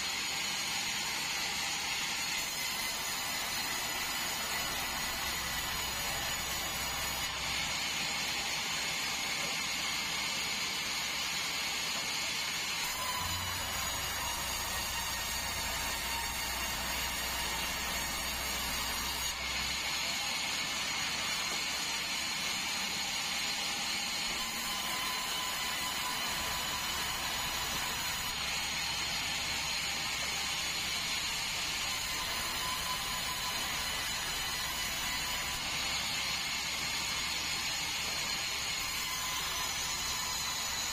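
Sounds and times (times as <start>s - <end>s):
band saw running: 0.0s - 40.9s.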